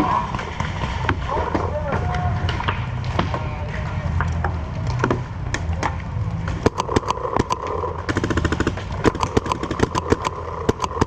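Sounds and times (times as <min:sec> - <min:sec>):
paintball markers firing: 0:05.6 - 0:11.0.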